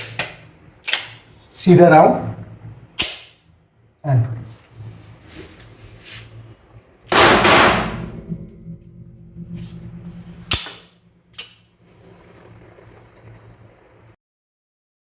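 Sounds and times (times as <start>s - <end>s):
pistol shot: 3.0s - 3.4s, 7.1s - 8.4s, 10.5s - 10.9s.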